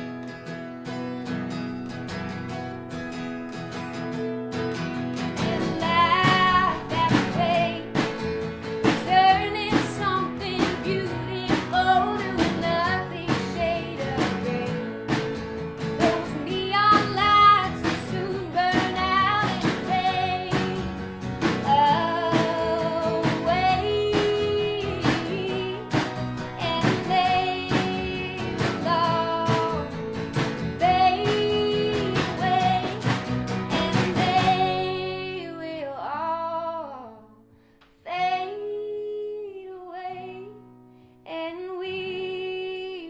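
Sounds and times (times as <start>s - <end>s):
strummed acoustic guitar: 0.0s - 38.7s
person singing: 5.3s - 8.2s, 8.8s - 15.2s, 16.0s - 37.2s
steady beat: 11.6s - 34.7s.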